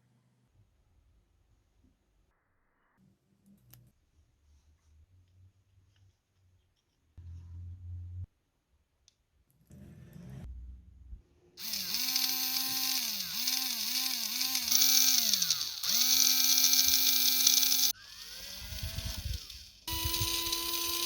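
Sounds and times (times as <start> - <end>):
small electric motor whining: 11.6 - 21.0.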